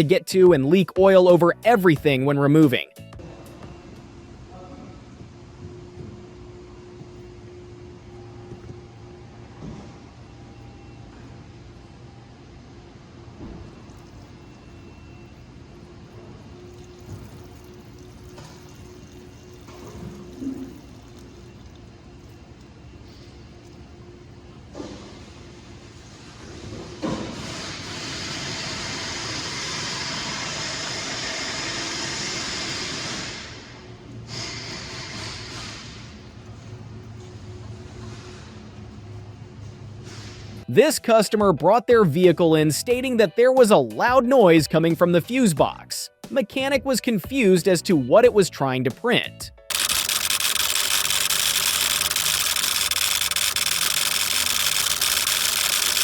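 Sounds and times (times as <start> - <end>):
fuse box relay chattering: 49.7 - 56.0.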